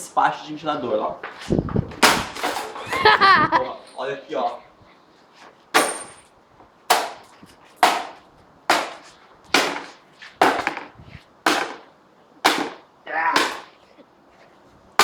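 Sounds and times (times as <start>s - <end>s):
blows striking electric fan: 1.2s - 4.1s, 5.7s - 13.7s.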